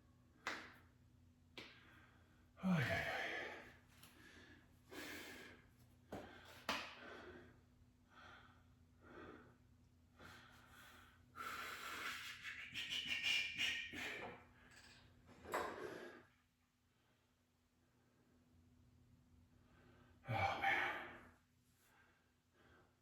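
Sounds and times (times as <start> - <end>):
man breathing hard and panting: 1.6 - 14.6, 19.6 - 21.3.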